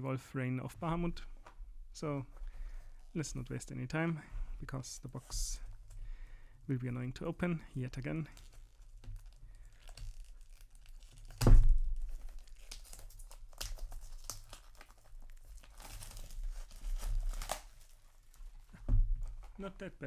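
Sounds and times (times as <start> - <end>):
cardboard and wrapping tearing: 7.8 - 19.7.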